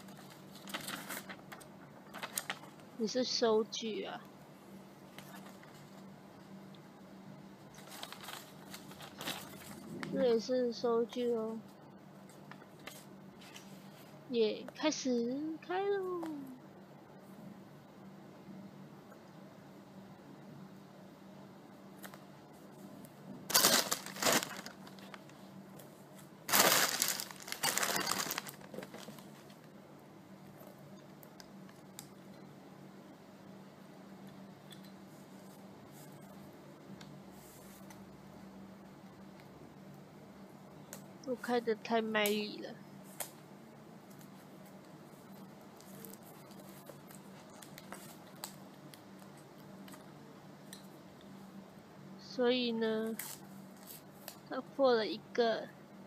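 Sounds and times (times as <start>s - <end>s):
packaging rustling: 0.0s - 2.8s, 7.8s - 9.8s, 23.5s - 25.4s, 26.5s - 29.6s.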